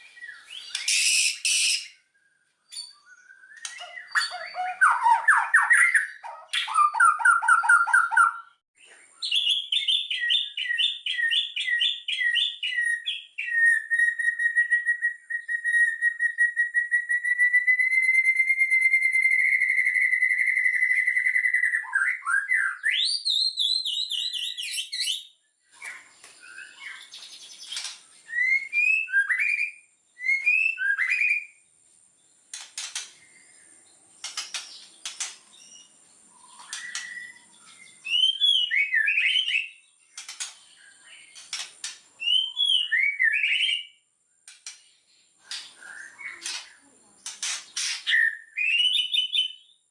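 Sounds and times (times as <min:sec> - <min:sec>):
bird whistling song: 0:00.0 - 0:31.7, 0:32.5 - 0:49.9
sharp clicks: 0:32.5 - 0:33.2, 0:34.2 - 0:35.5, 0:40.1 - 0:40.6, 0:44.4 - 0:44.9.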